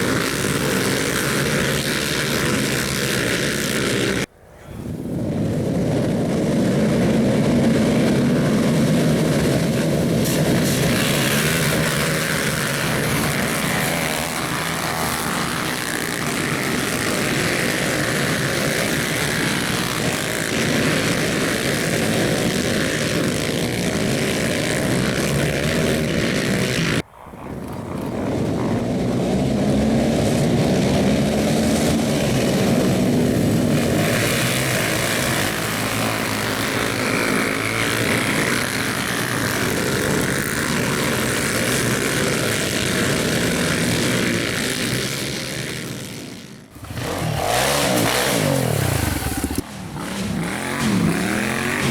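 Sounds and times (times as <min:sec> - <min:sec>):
racing quad engines revving: 0:00.0 - 0:04.3, 0:05.1 - 0:51.9.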